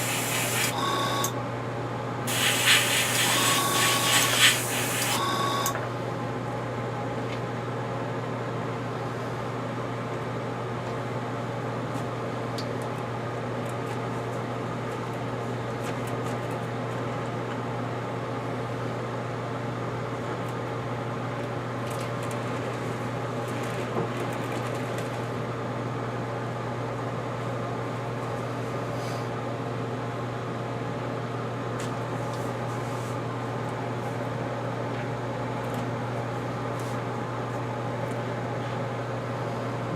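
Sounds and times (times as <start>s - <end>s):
paint spray hiss: 2.3s - 5.2s
small motor humming: 2.3s - 5.7s.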